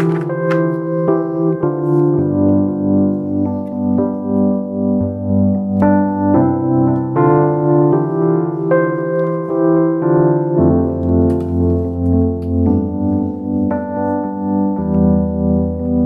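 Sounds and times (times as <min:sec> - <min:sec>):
electric piano or organ chords: 0:00.0 - 0:16.0.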